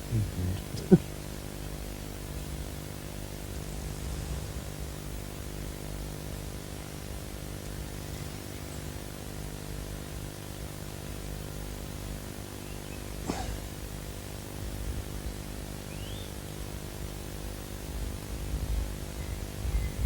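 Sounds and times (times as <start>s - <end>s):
steady hiss: 0.0s - 1.3s
low electrical hum: 0.0s - 20.0s.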